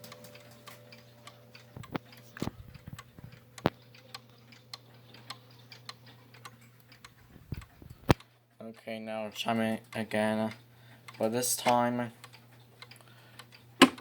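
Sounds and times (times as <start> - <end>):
wall clock ticking: 0.0 - 14.0
louder clicks and knocks: 13.8 - 14.0.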